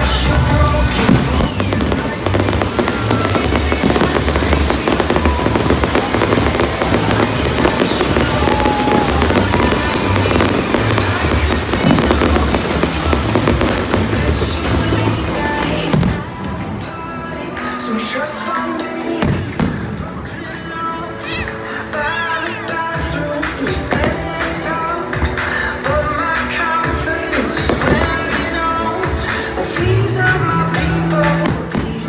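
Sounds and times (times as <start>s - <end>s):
fireworks bangs and crackles: 0.0s - 20.7s, 23.0s - 32.0s
pop music with steady beat: 0.0s - 32.0s.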